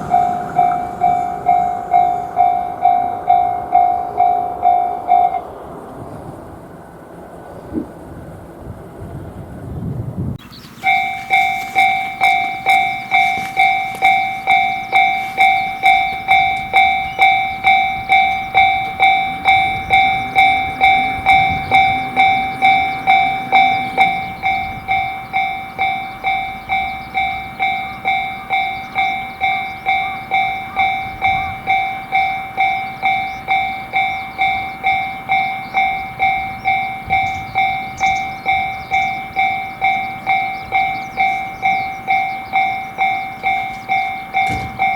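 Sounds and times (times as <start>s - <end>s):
level crossing alarm: 0.0s - 5.6s, 10.7s - 44.9s.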